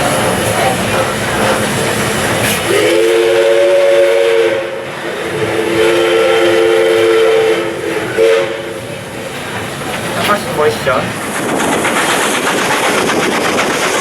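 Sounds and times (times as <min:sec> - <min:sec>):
train rumble: 0:00.0 - 0:14.0
steam locomotive whistle: 0:02.6 - 0:08.8.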